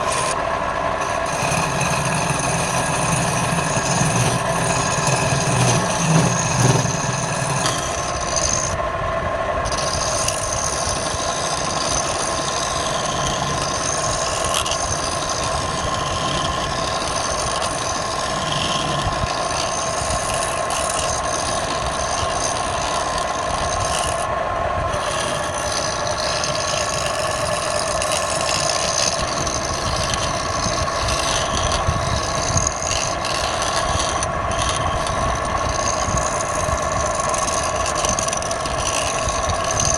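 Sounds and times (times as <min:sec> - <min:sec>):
tool scraping spinning wood: 0:00.0 - 0:08.8, 0:09.6 - 0:39.9
wood lathe running: 0:00.0 - 0:08.8, 0:09.6 - 0:39.9.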